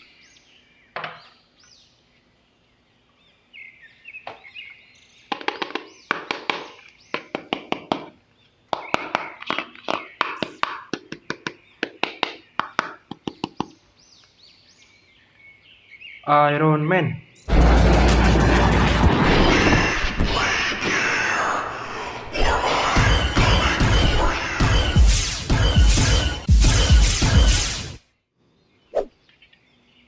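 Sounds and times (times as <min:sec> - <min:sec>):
small birds chirping: 0:00.0 - 0:17.5, 0:28.4 - 0:30.0.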